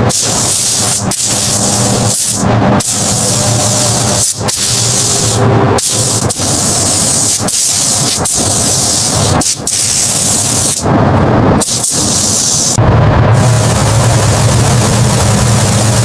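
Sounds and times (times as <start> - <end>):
spraying hiss: 0.0 - 10.8, 11.6 - 12.8
low hum: 0.0 - 16.0.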